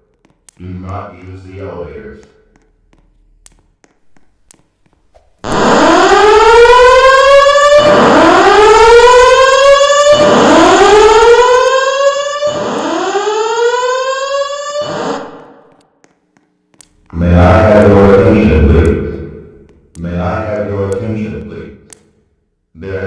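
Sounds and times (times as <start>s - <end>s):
rising whoop alarm tone: 5.5s - 15.6s.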